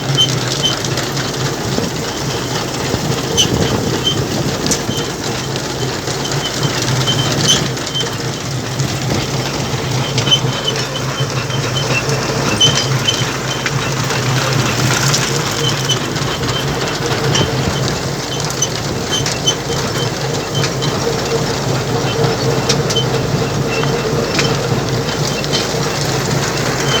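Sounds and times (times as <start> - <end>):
harvesting machine engine hum: 0.0 - 27.0
short high squeak: 10.0 - 16.7.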